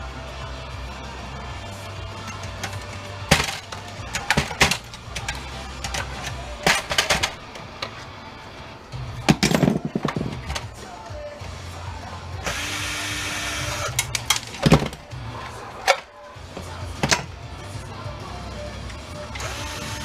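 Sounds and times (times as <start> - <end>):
printer parts clicking and clacking: 2.6 - 8.0.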